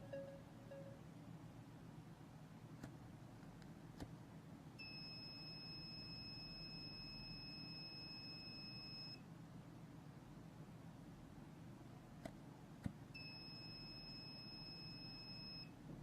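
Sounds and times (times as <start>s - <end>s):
high-pitched alarm buzzer tone: 4.8s - 9.2s, 13.2s - 15.7s.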